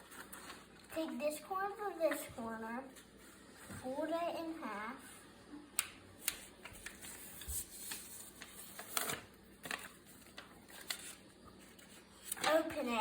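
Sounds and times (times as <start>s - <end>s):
paper crinkling: 0.0s - 1.2s, 6.2s - 12.9s
paper folding and creasing: 6.2s - 12.6s.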